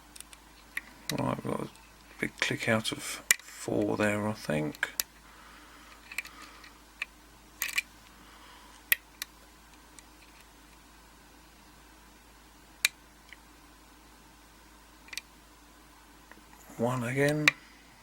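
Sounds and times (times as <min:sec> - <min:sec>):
faint steady hum: 0:00.0 - 0:18.0
lock pick clicking in lock pins: 0:07.6 - 0:07.8.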